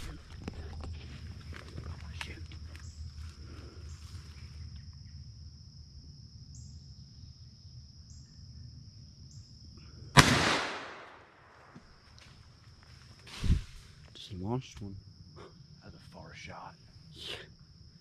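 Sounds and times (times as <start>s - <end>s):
shotgun shot with echo: 10.2s - 11.4s.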